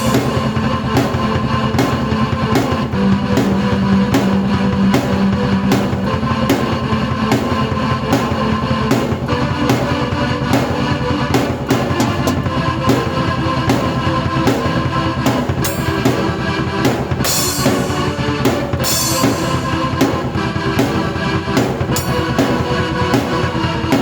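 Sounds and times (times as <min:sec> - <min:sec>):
cymbal crashes: 0:00.0 - 0:09.9, 0:17.2 - 0:21.0
drum kit beat: 0:00.0 - 0:24.0
keyboard: 0:00.0 - 0:24.0.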